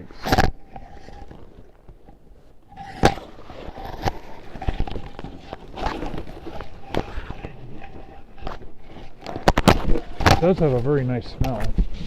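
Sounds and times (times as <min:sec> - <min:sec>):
cardboard box rustling: 0:02.8 - 0:12.0.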